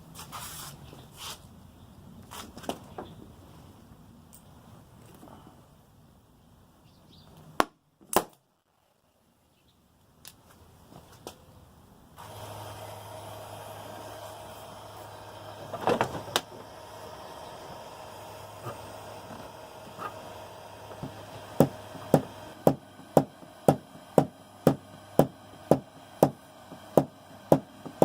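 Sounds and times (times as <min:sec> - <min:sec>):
steady low hum: 0:11.6 - 0:28.0
sharp knocks and clicks: 0:20.9 - 0:28.0.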